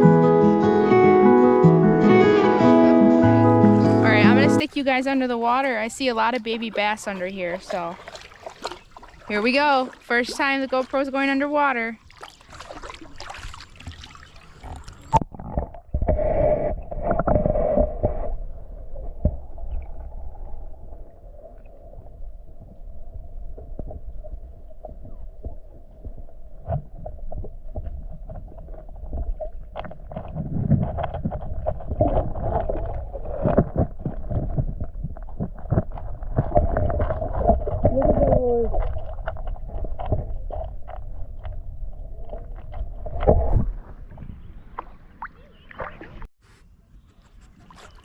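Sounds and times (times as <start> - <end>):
underwater sloshing and knocks: 6.1 - 11.4, 12.0 - 46.3
low rumbling: 12.6 - 45.2.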